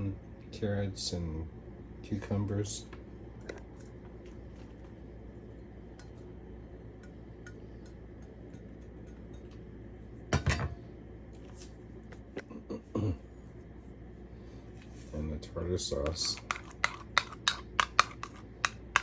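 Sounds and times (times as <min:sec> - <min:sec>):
low steady hum: 0:00.0 - 0:19.0
dishes and glassware clinking: 0:10.4 - 0:10.8.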